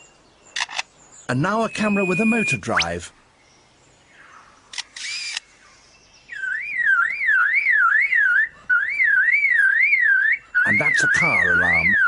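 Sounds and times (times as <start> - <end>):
bird mimicking camera shutter: 0.6 - 0.9, 4.7 - 5.5
bird mimicking car alarm: 1.3 - 3.0, 6.3 - 12.0.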